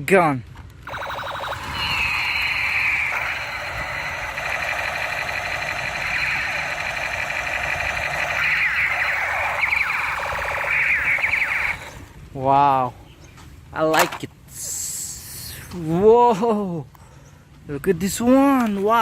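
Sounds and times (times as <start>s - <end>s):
toy gun siren-like warbling: 0.8s - 12.1s
quick falling electronic sweeps: 0.9s - 12.1s.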